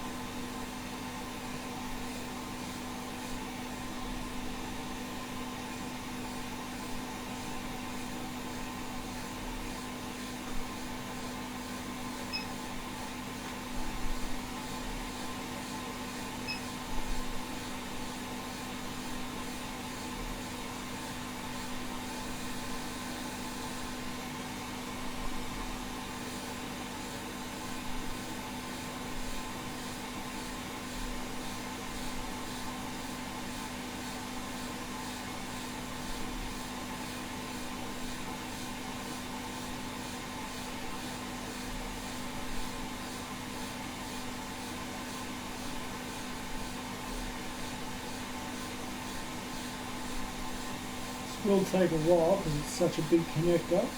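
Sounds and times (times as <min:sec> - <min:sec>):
hot air station hissing: 0:51.3 - 0:53.9.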